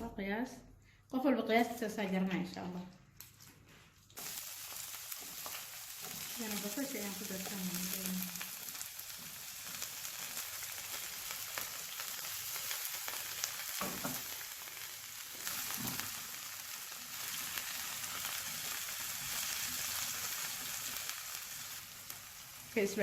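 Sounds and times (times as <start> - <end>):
onion sizzling in hot oil: 4.1 - 23.0.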